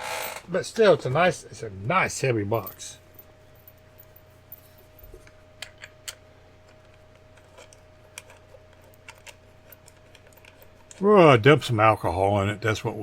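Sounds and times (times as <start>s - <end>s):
faint steady hum: 0.0s - 13.0s
small parts clicking: 6.8s - 11.1s.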